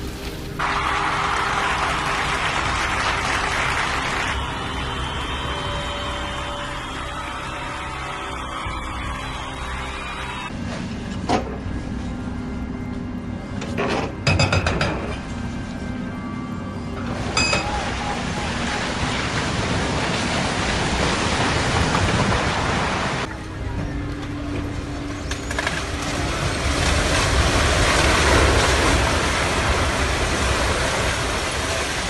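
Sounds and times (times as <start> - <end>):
faint engine hum: 23.2 - 32.0.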